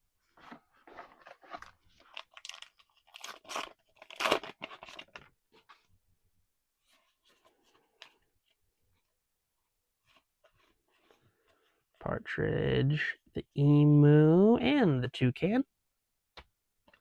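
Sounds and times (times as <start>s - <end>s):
foil wrapper crinkling: 1.0s - 5.3s.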